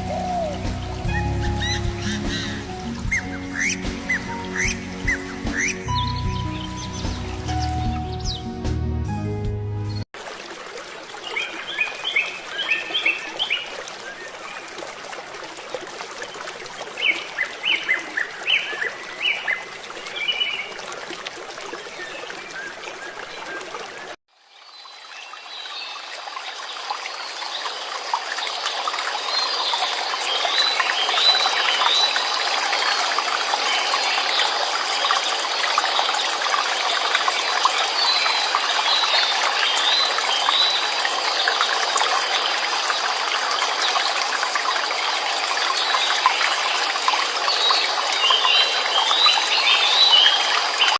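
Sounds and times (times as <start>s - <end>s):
small birds chirping: 0.0s - 8.6s
water trickling and flowing: 0.0s - 8.6s, 10.1s - 50.9s.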